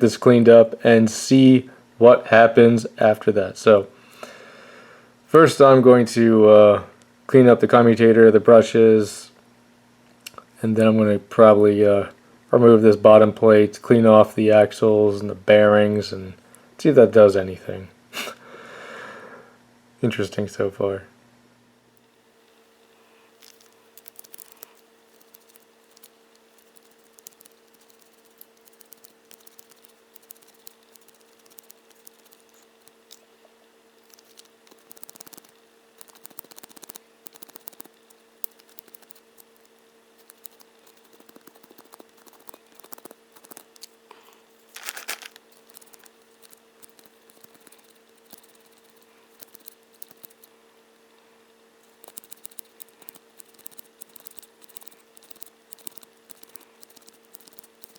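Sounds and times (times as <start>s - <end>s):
faint steady hum: 0.0s - 57.9s
scratchy rasp: 23.4s - 33.2s, 34.0s - 44.0s, 44.8s - 50.5s, 51.8s - 57.9s
small tools clicking and tapping: 51.8s - 57.9s.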